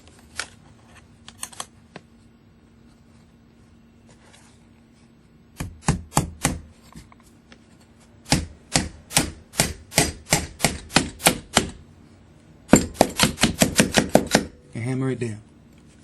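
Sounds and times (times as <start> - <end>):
hammer striking nail in metal: 12.7 - 14.6.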